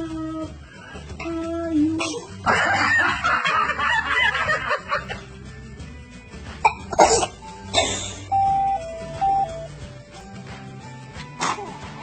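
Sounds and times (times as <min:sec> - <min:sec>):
background music: 0:00.0 - 0:12.0
baby sneezing: 0:02.0 - 0:02.4, 0:06.9 - 0:08.2, 0:11.2 - 0:11.8.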